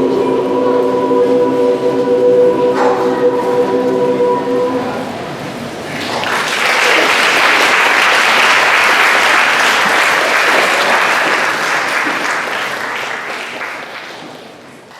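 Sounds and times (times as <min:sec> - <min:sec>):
audience applauding: 0:05.9 - 0:14.9.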